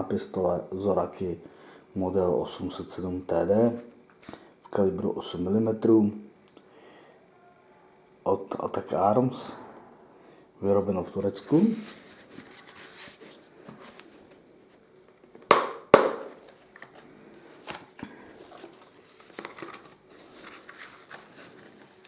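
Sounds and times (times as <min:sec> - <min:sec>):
rustling: 0:11.4 - 0:14.9, 0:16.3 - 0:22.0.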